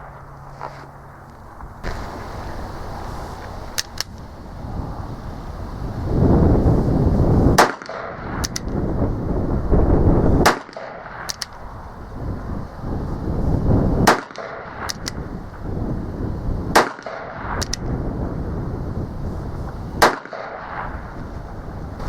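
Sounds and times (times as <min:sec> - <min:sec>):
revolver hammer cocking clicks: 0:07.6 - 0:08.8, 0:10.5 - 0:11.6, 0:14.3 - 0:15.2, 0:17.0 - 0:17.8.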